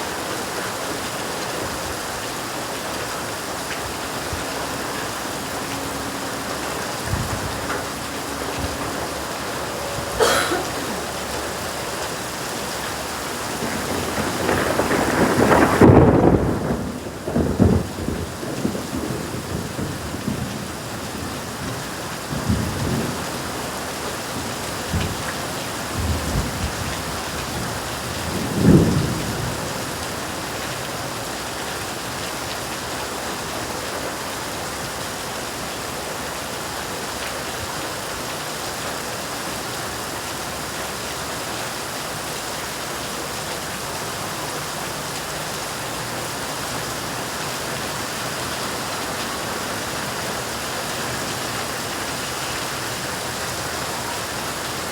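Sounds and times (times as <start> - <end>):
heavy rain: 0.0 - 54.9
thunder rolling: 4.1 - 23.7, 24.4 - 30.0.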